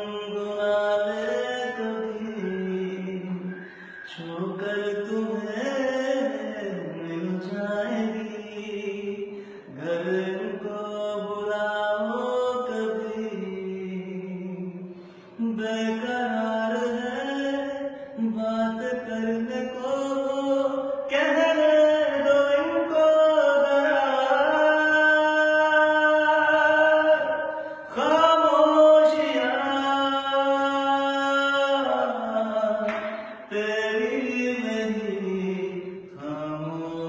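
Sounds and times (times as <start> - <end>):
man singing unaccompanied: 0.0 - 37.0
man breathing between phrases: 3.5 - 4.1, 9.3 - 9.7, 14.8 - 15.4, 27.5 - 27.9.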